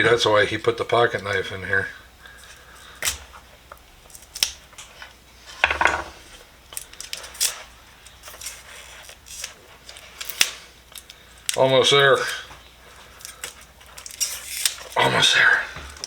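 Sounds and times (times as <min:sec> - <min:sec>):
knife scraping packing tape: 0:08.2 - 0:10.6, 0:13.2 - 0:15.0.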